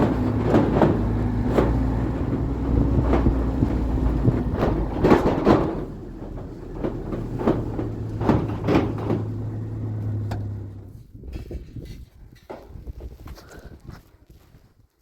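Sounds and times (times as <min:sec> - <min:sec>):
vehicle engine humming: 0:00.0 - 0:11.1
knocks and clanks: 0:00.0 - 0:11.7.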